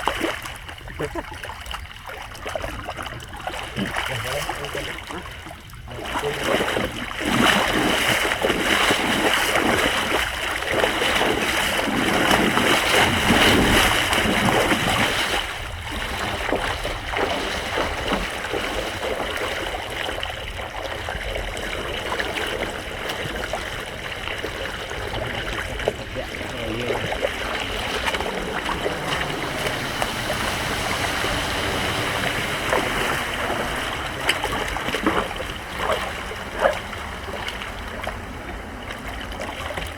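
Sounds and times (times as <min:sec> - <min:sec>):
floodwater rushing and splashing: 0:00.0 - 0:39.9.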